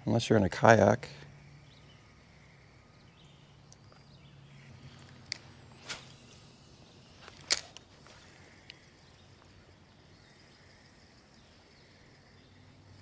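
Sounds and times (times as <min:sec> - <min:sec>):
faint high insect-like hum: 0:00.0 - 0:13.0
faint ticks: 0:07.2 - 0:09.6.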